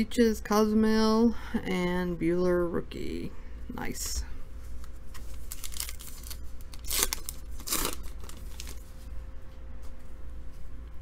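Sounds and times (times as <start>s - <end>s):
foil wrapper crinkling and tearing: 5.2s - 8.9s.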